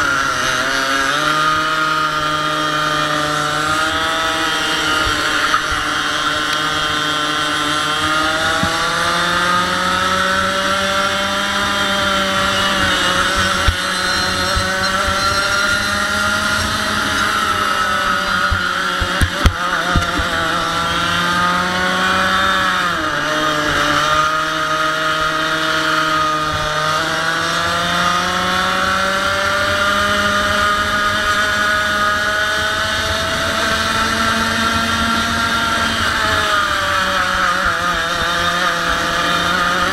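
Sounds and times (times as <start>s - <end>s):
kart engine racing: 0.0s - 39.9s
sharp knocks: 8.4s - 9.3s, 18.4s - 20.4s.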